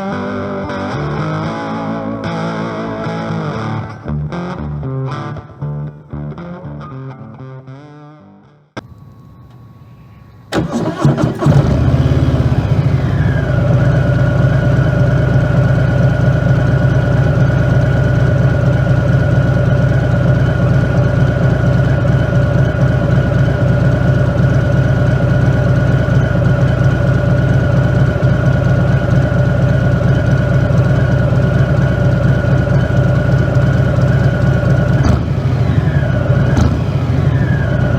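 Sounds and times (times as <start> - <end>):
motorcycle engine starting and idling: 8.8 - 37.9.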